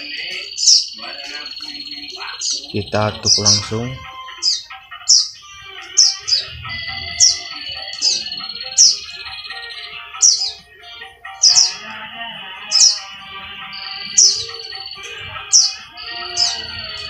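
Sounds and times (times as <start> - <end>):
background music: 0.0 - 17.0
bird chirping: 0.0 - 17.0
high whistled bird notes: 0.0 - 17.0.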